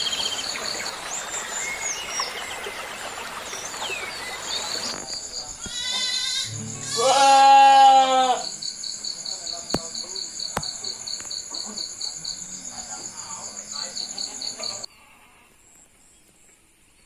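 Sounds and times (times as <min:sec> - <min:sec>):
crickets chirping: 0:00.0 - 0:14.9
goat bleating: 0:05.6 - 0:08.5.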